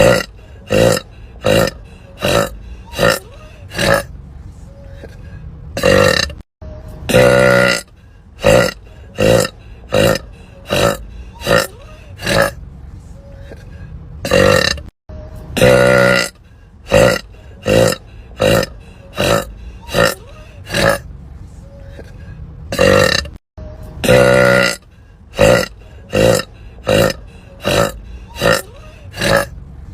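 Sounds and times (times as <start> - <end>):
woman burping: 0.0 - 4.1, 5.8 - 6.4, 7.1 - 7.8, 8.4 - 12.5, 14.3 - 14.9, 15.6 - 16.3, 16.9 - 21.0, 22.7 - 23.4, 24.0 - 24.8, 25.4 - 29.5.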